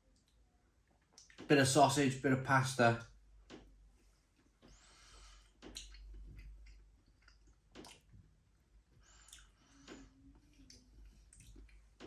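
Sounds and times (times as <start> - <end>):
chewing food: 5.4 - 8.4, 9.1 - 12.0.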